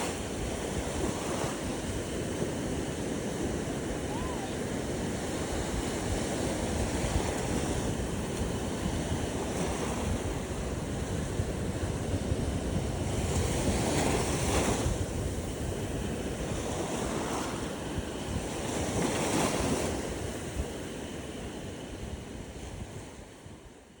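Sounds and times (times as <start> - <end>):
ocean waves washing onto beach: 0.0 - 23.8
wind rumbling on microphone: 0.0 - 23.9.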